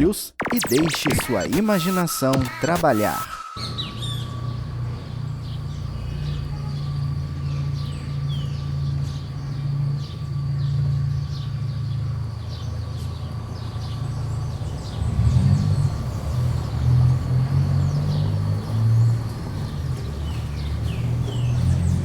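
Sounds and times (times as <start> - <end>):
small birds chirping: 0.5 - 22.0
faint steady whine: 2.7 - 14.7
low rumble of traffic: 3.6 - 22.0.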